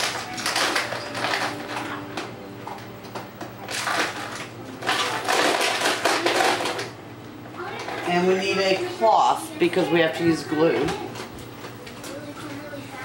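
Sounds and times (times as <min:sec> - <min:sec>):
crinkling and rustling: 0:00.0 - 0:07.0.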